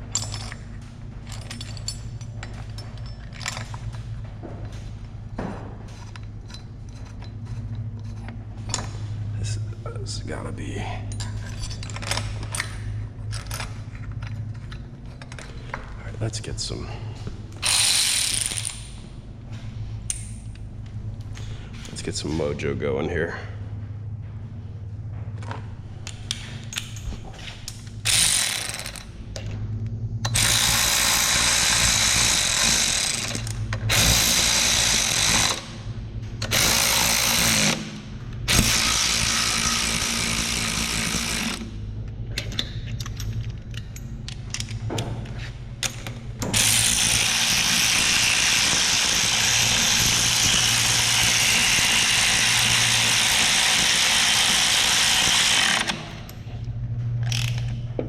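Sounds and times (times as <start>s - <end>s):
impact wrench hammering: 30.3s - 35.7s, 36.4s - 41.7s.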